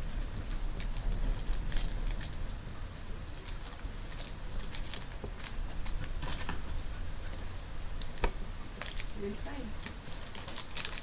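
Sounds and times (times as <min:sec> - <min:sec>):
cards clicking and rustling: 0:03.4 - 0:06.7, 0:09.8 - 0:11.0.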